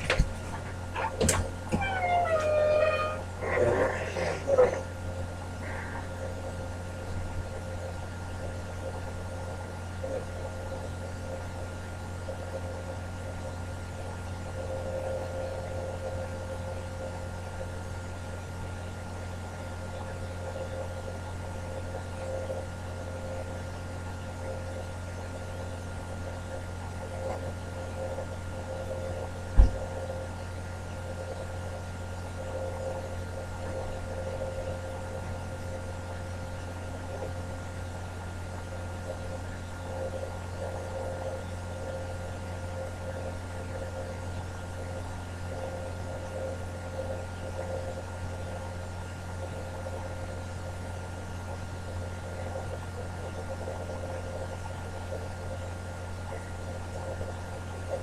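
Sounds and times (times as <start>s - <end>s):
low electrical hum: 0.0s - 58.0s
faint wavering high tone: 1.7s - 3.3s.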